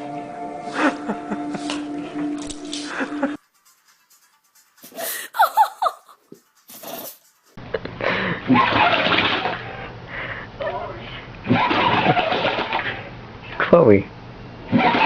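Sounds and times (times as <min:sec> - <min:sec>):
people laughing: 0:00.7 - 0:01.8, 0:02.8 - 0:03.4, 0:05.0 - 0:06.3.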